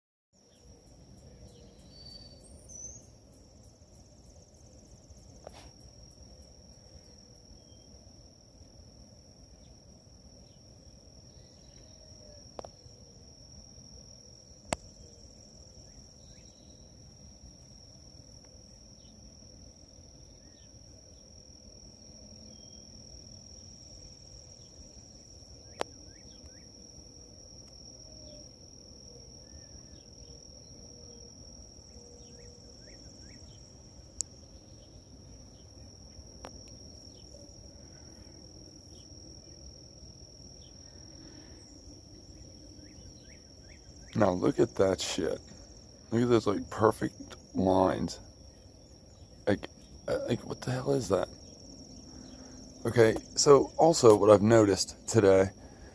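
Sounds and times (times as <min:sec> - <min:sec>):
high-pitched insect drone: 0:00.4 - 0:55.9
bird chirps: 0:00.5 - 0:03.1.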